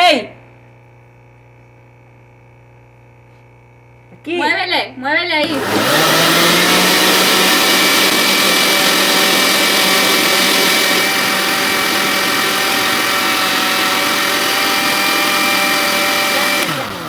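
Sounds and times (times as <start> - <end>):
blender running: 5.4 - 17.0.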